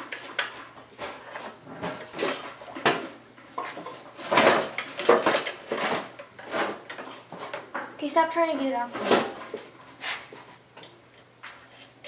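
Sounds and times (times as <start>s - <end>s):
metal parts and tools clanking: 3.8s - 6.0s.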